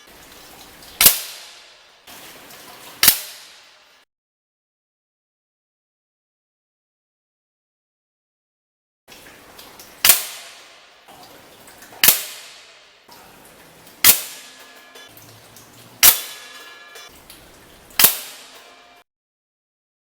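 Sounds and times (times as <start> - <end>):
air rifle shots: 16.0 - 16.4, 18.0 - 18.6.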